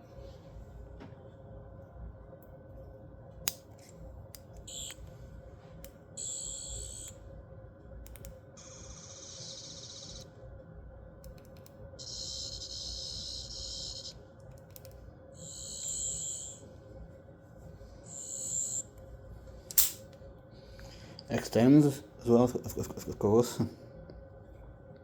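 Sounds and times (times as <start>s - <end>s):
toy high warbling electronic sound: 8.6s - 10.2s, 12.0s - 14.2s, 15.4s - 16.6s, 18.1s - 18.8s.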